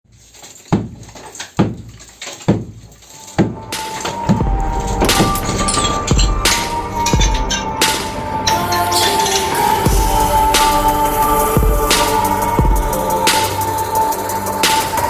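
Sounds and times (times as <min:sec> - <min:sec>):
background music with beat: 0:03.2 - 0:15.0
bass drum hits: 0:03.4 - 0:08.5, 0:09.8 - 0:14.0.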